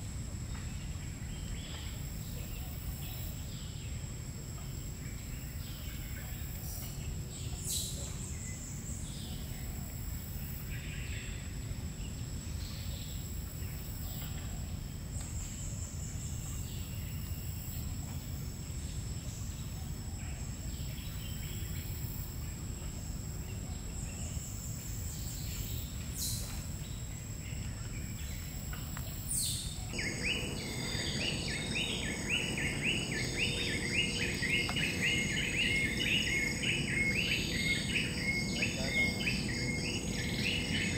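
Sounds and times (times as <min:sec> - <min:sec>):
high insect drone: 0:00.0 - 0:40.9
low background rumble: 0:29.6 - 0:40.9.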